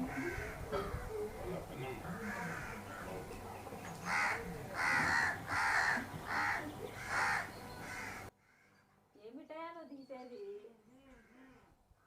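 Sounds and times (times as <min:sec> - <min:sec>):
crow cawing: 0:00.0 - 0:01.0, 0:02.0 - 0:03.2, 0:04.0 - 0:08.8.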